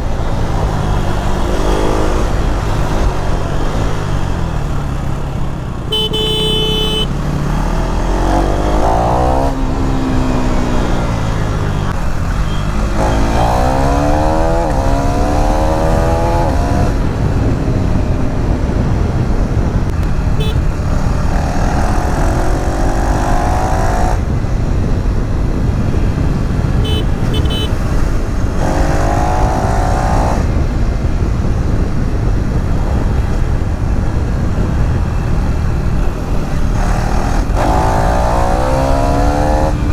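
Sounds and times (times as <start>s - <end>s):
motorcycle engine revving: 0.0s - 39.9s
wind and road noise: 0.0s - 39.9s
vehicle horn: 5.8s - 7.2s, 12.3s - 14.6s, 20.3s - 20.7s, 26.8s - 28.0s.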